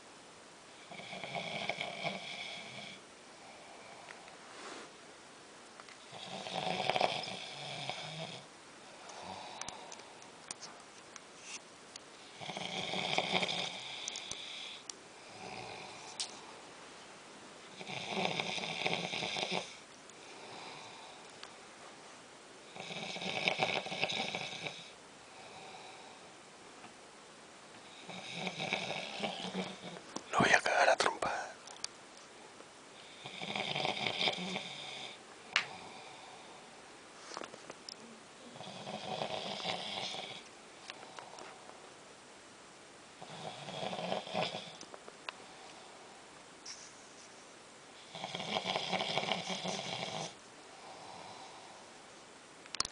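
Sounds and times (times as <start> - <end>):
quiet breaths: 0.6 - 5.0, 5.8 - 27.0, 27.7 - 42.0, 43.1 - 52.4
person snoring: 0.8 - 4.0, 6.1 - 8.5, 9.1 - 10.0, 12.2 - 16.2, 17.8 - 21.3, 22.7 - 26.2, 27.9 - 31.6, 33.0 - 36.7, 38.4 - 41.5, 43.2 - 44.8, 48.0 - 51.9.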